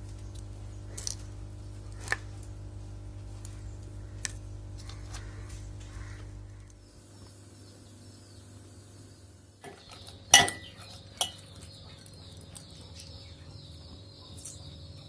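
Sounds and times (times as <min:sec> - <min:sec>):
metal utensils clanking on a pot: 0:09.6 - 0:12.8.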